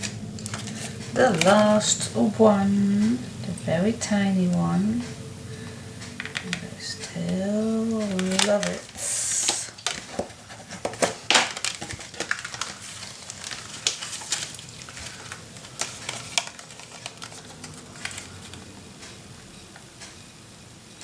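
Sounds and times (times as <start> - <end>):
paper rustling: 0.0 - 2.1, 6.2 - 18.8.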